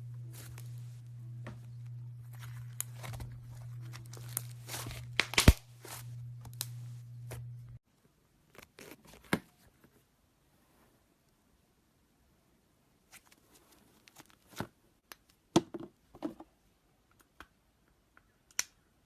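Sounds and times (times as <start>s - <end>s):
low steady hum: 0.0s - 8.6s.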